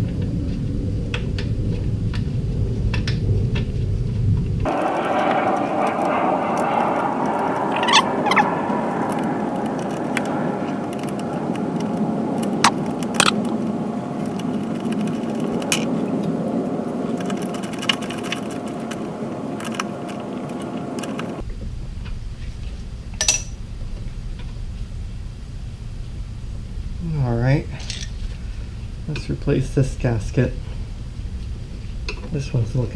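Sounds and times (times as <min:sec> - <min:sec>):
steady background hum: 0:00.0 - 0:21.7
metal tools clinking: 0:23.2 - 0:23.5
ringing metallic clink: 0:23.2 - 0:23.6.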